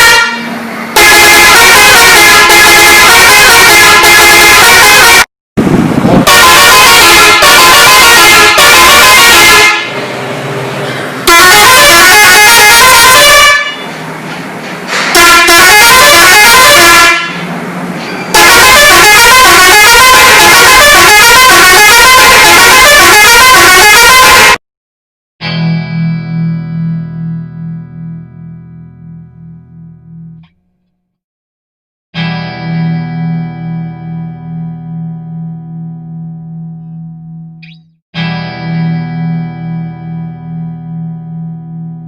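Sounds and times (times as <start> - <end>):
musical bus horn tunes: 0.0 - 5.3, 6.2 - 10.2, 11.2 - 14.1, 14.9 - 24.6.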